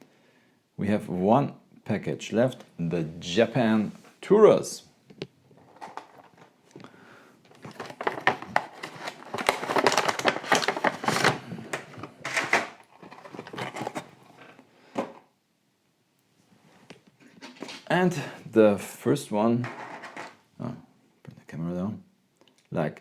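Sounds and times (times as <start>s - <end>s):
packaging crinkling and tearing: 7.5s - 14.6s.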